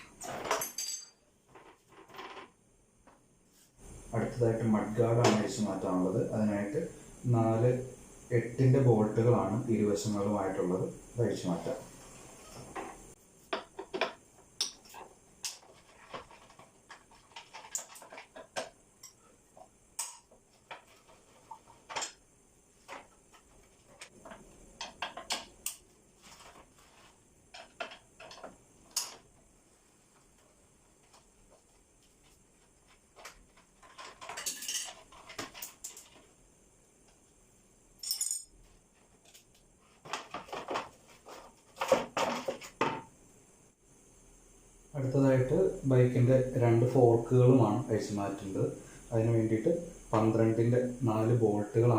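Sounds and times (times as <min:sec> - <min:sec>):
tools rattling: 0:00.2 - 0:02.5, 0:13.8 - 0:19.3, 0:33.2 - 0:36.4.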